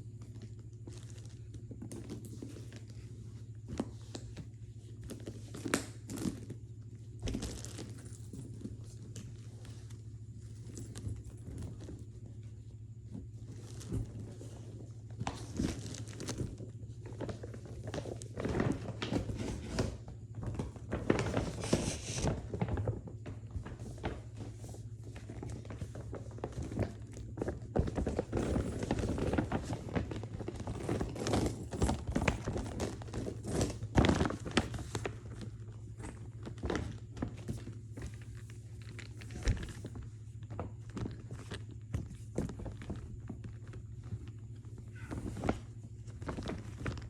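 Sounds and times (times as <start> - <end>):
steady low hum: 0.0 - 47.0
wrapper crinkling: 7.2 - 8.5, 28.0 - 40.0.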